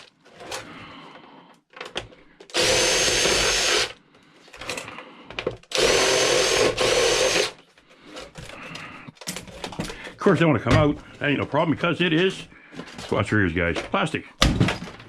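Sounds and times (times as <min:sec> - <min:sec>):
power drill motor whine: 0:02.5 - 0:04.0, 0:05.7 - 0:07.6.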